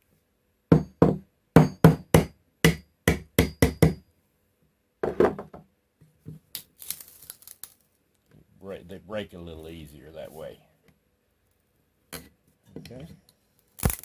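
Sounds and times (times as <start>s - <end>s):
hammer tapping chisel into wood: 0.7s - 4.0s.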